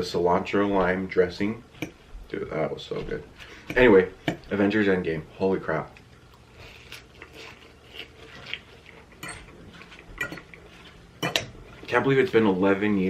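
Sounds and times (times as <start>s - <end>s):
utensil clinking against a dish: 9.1s - 11.9s.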